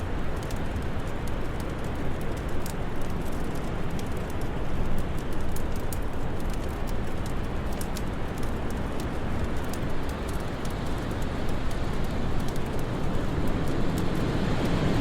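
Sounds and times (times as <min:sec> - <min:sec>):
wood fire crackling and popping: 0:00.0 - 0:15.0
low rush of wind: 0:09.2 - 0:15.0.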